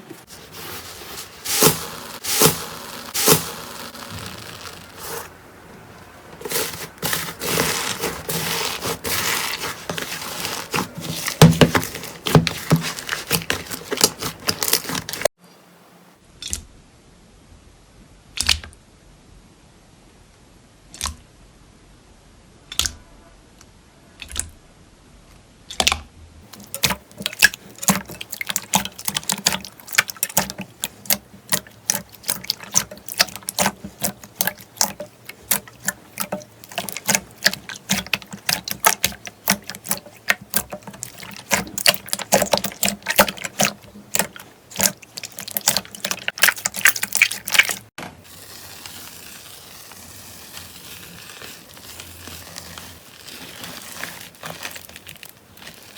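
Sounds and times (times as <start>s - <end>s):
slime squishing: 0.0s - 15.4s, 26.5s - 55.9s.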